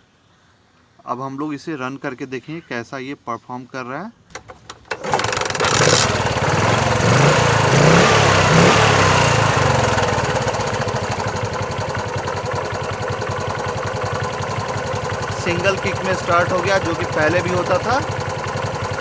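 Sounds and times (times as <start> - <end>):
scooter engine starting and idling: 4.3 - 19.0.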